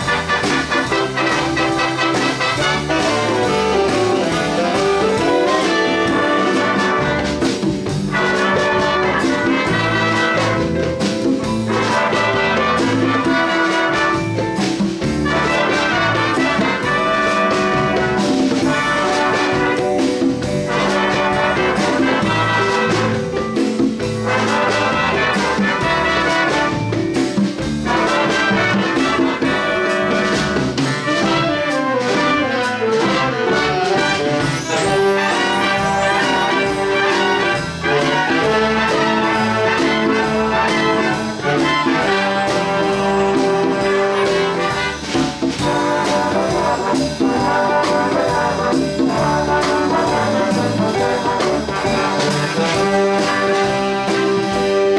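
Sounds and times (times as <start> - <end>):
big band playing: 0.0 - 54.9
trumpets and trombones: 0.0 - 54.9.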